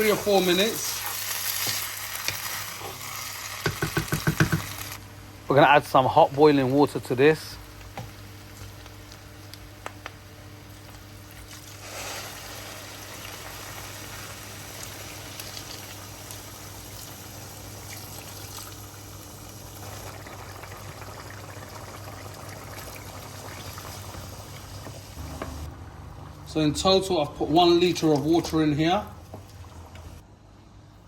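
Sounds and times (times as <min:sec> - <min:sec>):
boiling water pouring into pan: 0:10.7 - 0:24.7.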